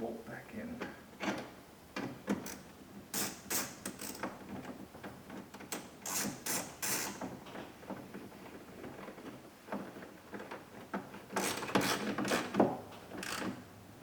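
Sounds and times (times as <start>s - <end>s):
hand ratchet clicking: 2.4s - 4.3s, 6.0s - 7.2s, 11.4s - 12.6s, 13.2s - 13.6s.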